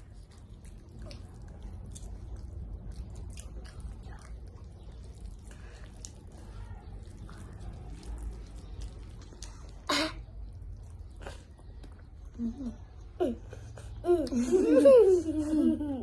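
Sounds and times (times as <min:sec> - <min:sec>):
chewing with wet mouth clicks: 0:00.0 - 0:12.4
steady low hum: 0:00.0 - 0:16.0.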